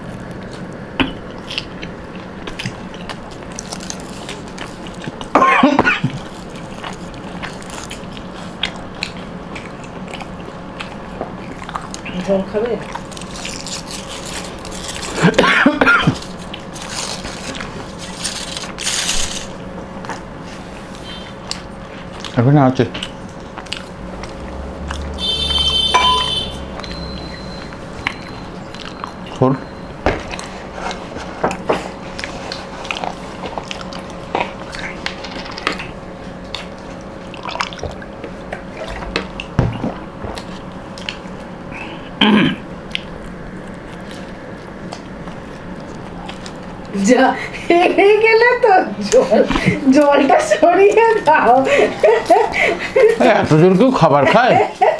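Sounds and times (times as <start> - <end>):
people chewing and lip-smacking: 0.0 - 47.7, 49.0 - 54.5
person coughing: 5.3 - 6.2, 15.2 - 16.2, 42.2 - 42.6
gulp or grunt: 42.2 - 42.6.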